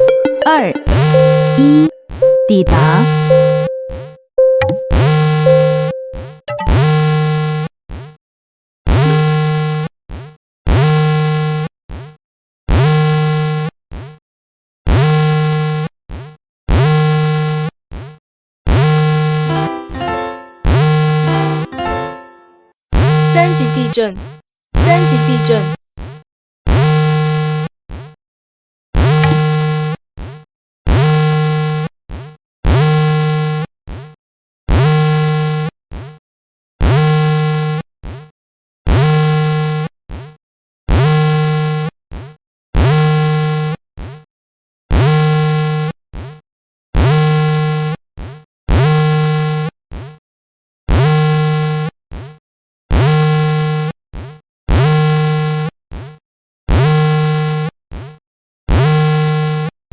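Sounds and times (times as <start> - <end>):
short electronic blip: 0.0 - 6.9, 29.2 - 29.6
buzzing electronic alarm tone: 0.0 - 7.2, 29.1 - 29.8.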